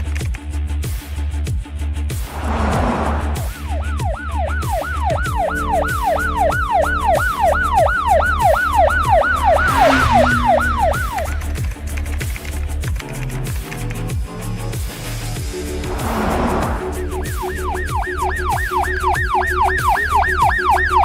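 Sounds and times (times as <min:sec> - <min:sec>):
music with bass beat: 0:00.0 - 0:21.0
ambulance siren yelping: 0:03.4 - 0:11.6, 0:17.1 - 0:21.0.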